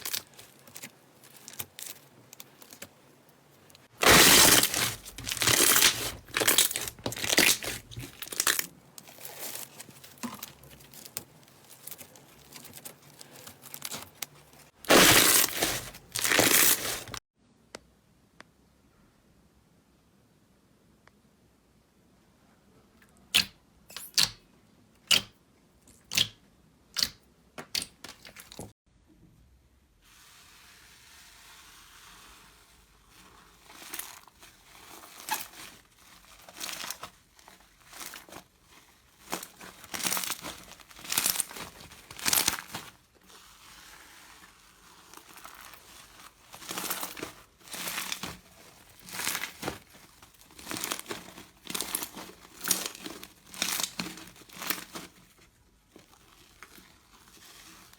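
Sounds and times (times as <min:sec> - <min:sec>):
slime squishing by hand: 0:00.0 - 0:17.2, 0:30.1 - 0:57.9.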